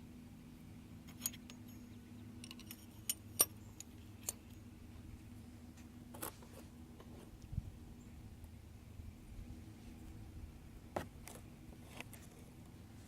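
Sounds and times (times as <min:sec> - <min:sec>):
steady low hum: 0:00.0 - 0:13.0
metal push rods clinking: 0:01.1 - 0:04.6.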